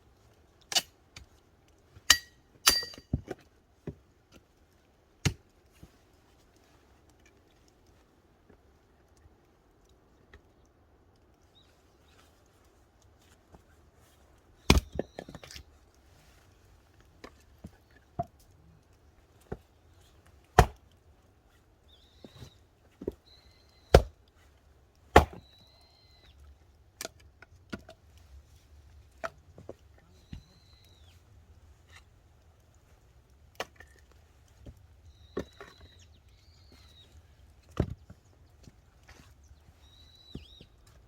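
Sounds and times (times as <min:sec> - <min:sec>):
axe chopping wood: 0:20.6 - 0:20.8, 0:23.9 - 0:24.1, 0:25.1 - 0:25.4.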